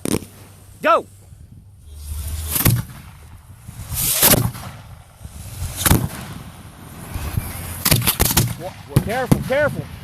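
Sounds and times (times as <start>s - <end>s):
fireworks bangs: 2.3s - 9.9s.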